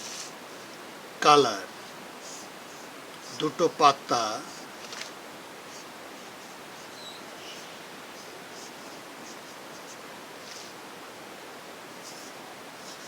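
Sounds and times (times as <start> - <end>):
colour pencil scratching on paper: 0.0 - 0.4, 2.2 - 3.5, 5.7 - 10.8, 11.9 - 13.0
steady background hiss: 0.0 - 13.0.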